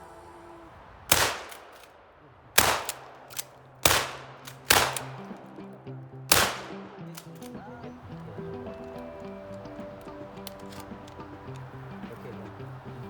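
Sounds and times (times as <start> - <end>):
shotgun shots: 1.1 - 2.0, 2.6 - 5.6, 6.3 - 7.6
faint clicks: 1.4 - 2.0, 2.8 - 3.7, 6.7 - 13.0.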